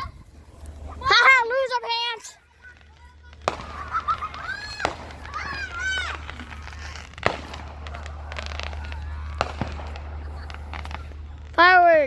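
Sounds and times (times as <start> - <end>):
fireworks crackling: 0.0 - 12.0
firework bang: 2.6 - 12.0.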